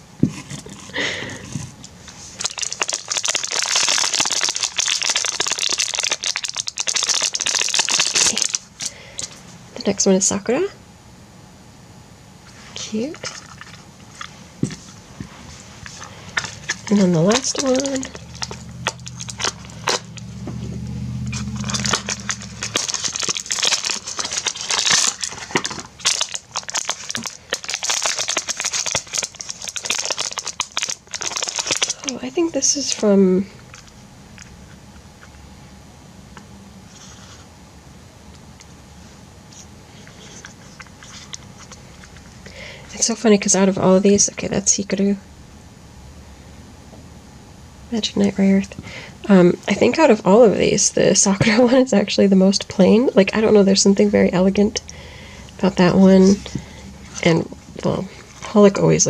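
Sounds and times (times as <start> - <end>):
packaging crinkling: 2.1 - 9.4, 13.2 - 33.0, 55.1 - 58.8
low hum: 8.2 - 27.2, 31.4 - 59.0.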